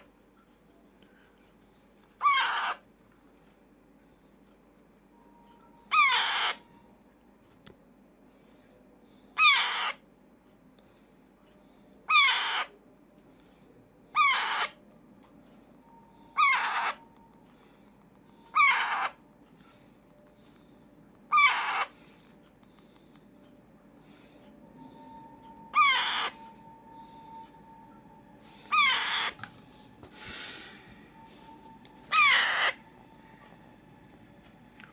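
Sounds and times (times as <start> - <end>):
parakeet screeching: 2.2 - 2.8, 5.9 - 6.7, 9.4 - 10.0, 12.1 - 12.7, 14.1 - 14.8, 16.3 - 17.1, 18.5 - 19.2, 21.3 - 22.0, 25.7 - 26.5, 28.6 - 29.4, 32.1 - 32.9.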